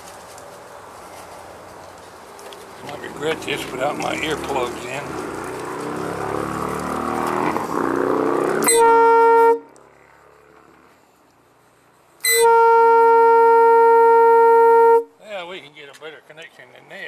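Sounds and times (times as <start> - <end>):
train horn blasts: 8.6 - 9.8, 12.2 - 15.2.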